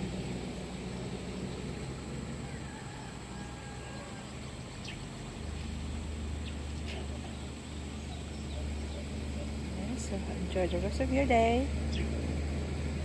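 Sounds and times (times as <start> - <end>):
low rumble of car traffic: 0.0 - 13.0.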